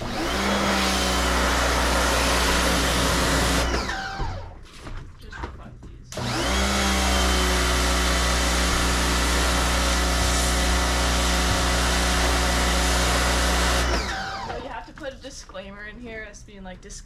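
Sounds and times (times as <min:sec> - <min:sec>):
pressure washer motor running: 0:00.0 - 0:04.5, 0:06.2 - 0:14.7.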